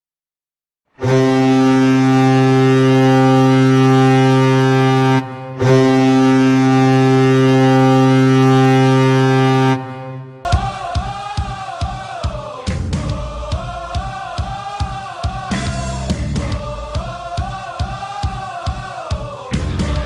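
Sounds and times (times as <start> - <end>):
goal horn blasts: 1.0 - 10.6.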